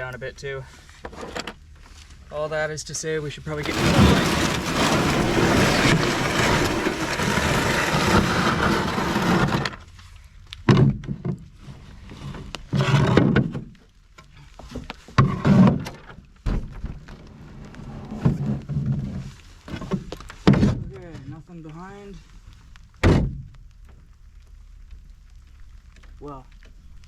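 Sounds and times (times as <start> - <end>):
canoe hull scraping over rock: 3.5 - 9.8.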